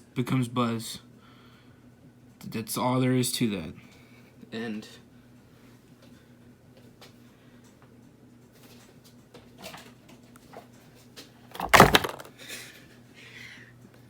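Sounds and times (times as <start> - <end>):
low electrical hum: 0.0 - 14.0
knock-like rustle: 11.6 - 12.3.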